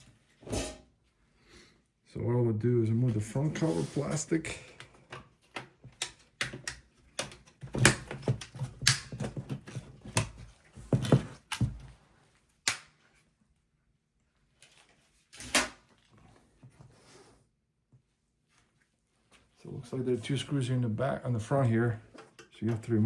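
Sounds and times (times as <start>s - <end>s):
sharp plastic snap: 12.6s - 13.0s.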